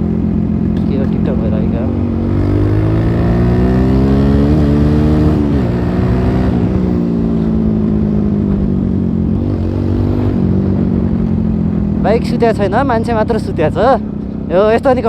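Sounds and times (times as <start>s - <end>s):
motorcycle engine accelerating: 0.0s - 15.0s.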